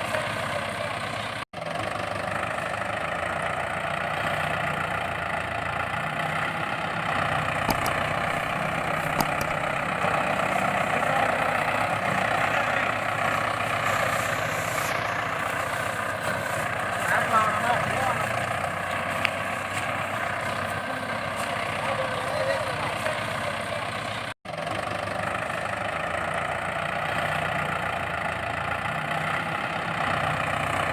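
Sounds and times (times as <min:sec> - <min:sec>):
motor running: 0:07.5 - 0:10.2.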